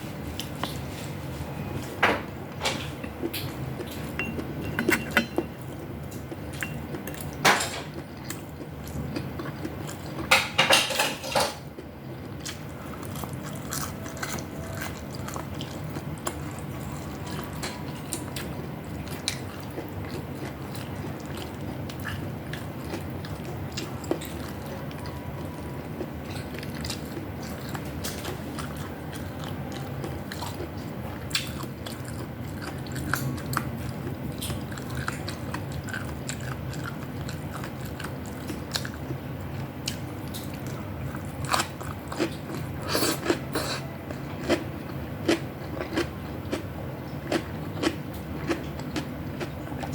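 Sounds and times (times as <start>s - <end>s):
utensil clinking against dish: 2.6s - 5.6s, 10.3s - 11.6s
chewing: 3.0s - 10.3s, 11.7s - 49.9s.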